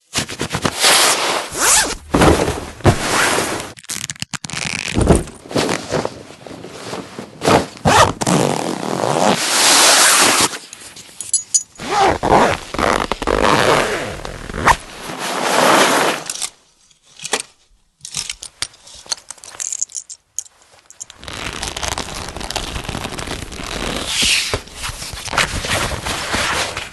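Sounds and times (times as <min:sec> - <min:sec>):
fabric rustling and rubbing: 0:00.1 - 0:03.8, 0:04.4 - 0:11.2, 0:11.8 - 0:16.3, 0:20.5 - 0:26.9
zippers pulled: 0:00.7 - 0:06.2, 0:07.4 - 0:10.7, 0:11.8 - 0:16.5, 0:20.9 - 0:25.4.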